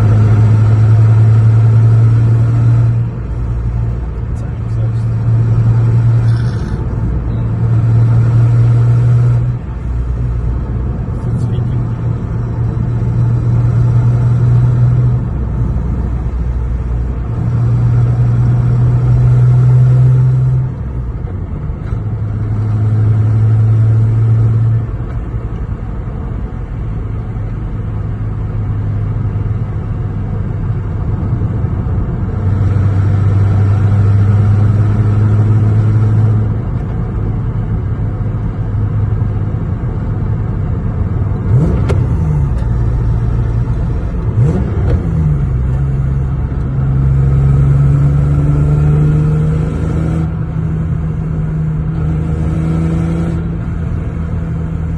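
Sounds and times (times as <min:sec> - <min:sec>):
car engine drone: 0:00.0 - 0:54.9.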